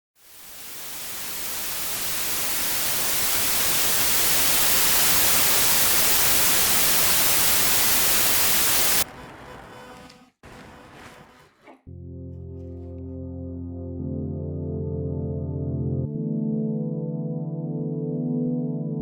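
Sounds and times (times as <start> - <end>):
static hiss: 0.2 - 9.1.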